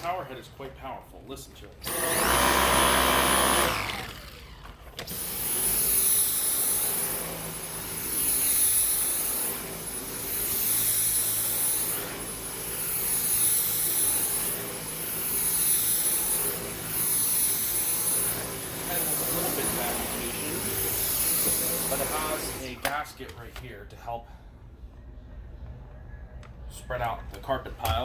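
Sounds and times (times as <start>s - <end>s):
vacuum cleaner motor whine: 1.8s - 22.7s.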